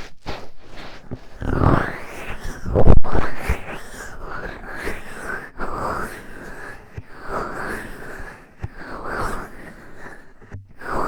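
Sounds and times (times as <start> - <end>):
fingertip scratching microphone: 0.0 - 3.9.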